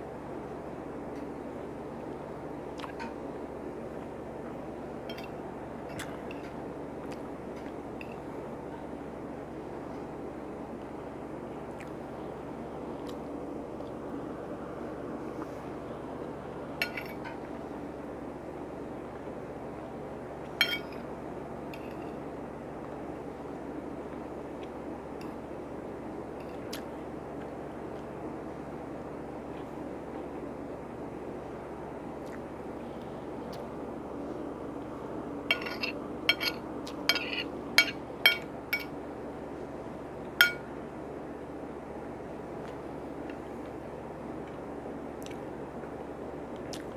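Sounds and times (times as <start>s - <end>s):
low background hum: 0.0s - 46.9s
cutlery clinking against a dish: 5.1s - 6.1s, 16.8s - 17.4s, 20.6s - 21.0s, 35.5s - 38.9s, 40.4s - 40.6s.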